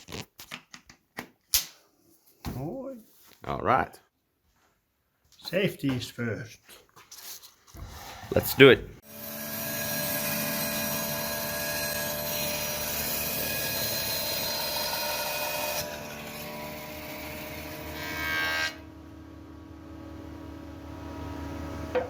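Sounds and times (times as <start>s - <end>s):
saw cutting wood: 7.8s - 18.9s
electric saw motor hum: 9.0s - 22.0s.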